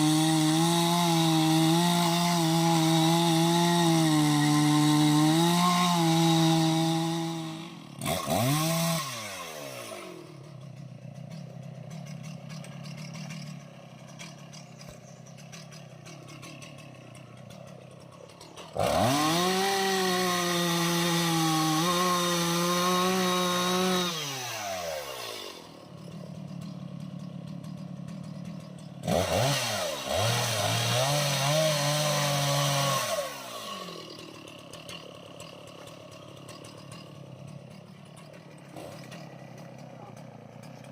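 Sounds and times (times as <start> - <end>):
chainsaw cutting wood: 0.0 - 40.9.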